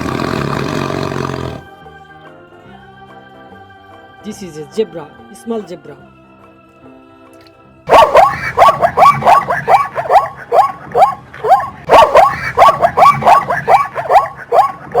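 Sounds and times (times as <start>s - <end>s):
zebra yelping barks: 7.9s - 15.0s.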